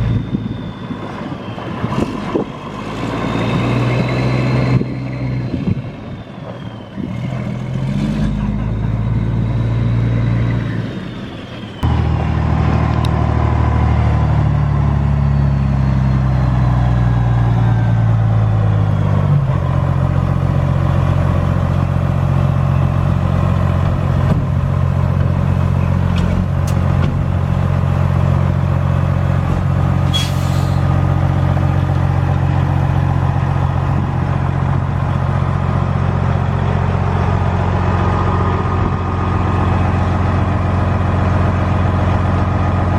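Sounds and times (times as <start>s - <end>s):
large vehicle engine running: 0.0s - 42.9s.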